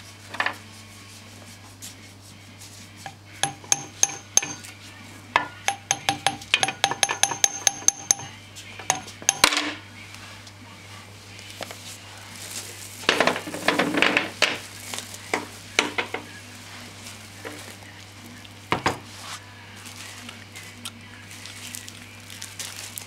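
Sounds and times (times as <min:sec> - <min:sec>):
metal tools and engine parts clinking: 0:03.4 - 0:04.7, 0:05.7 - 0:08.3.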